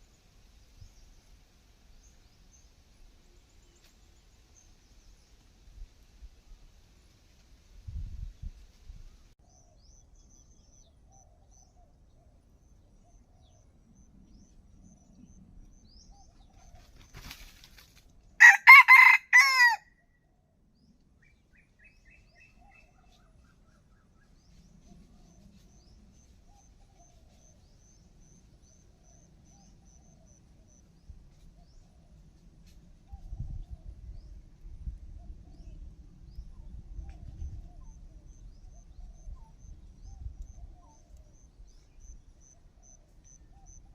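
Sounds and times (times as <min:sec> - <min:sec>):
rooster crowing: 0:18.4 - 0:19.9.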